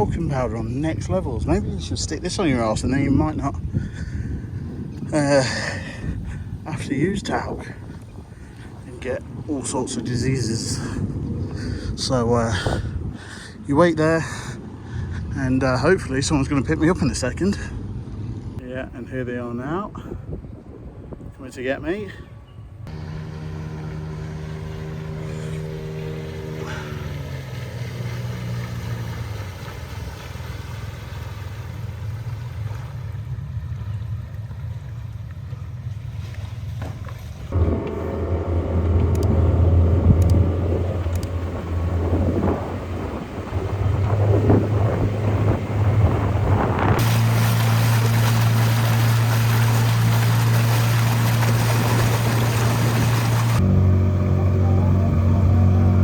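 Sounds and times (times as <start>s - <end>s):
wind noise: 0.0s - 13.7s, 19.1s - 22.8s, 37.5s - 53.7s
boat outboard motor running: 22.9s - 56.0s
rushing water: 23.5s - 53.6s.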